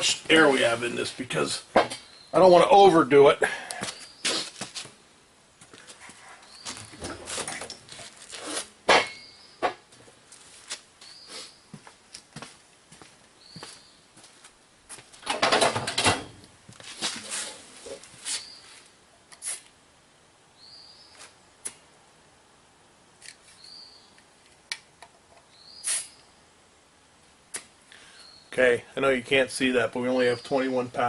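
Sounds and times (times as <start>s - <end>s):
air hissing from tire valve: 19.4s - 19.7s, 25.8s - 26.2s.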